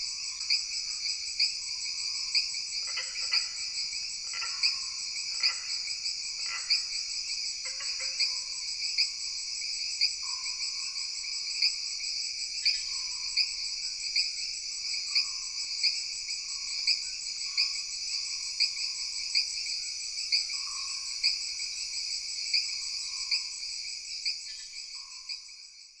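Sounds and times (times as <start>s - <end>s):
insects trilling: 0.0s - 12.0s
frogs calling: 2.3s - 8.5s.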